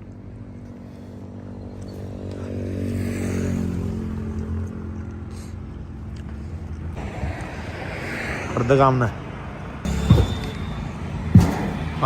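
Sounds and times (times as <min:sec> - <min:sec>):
engine running: 0:09.9 - 0:12.0.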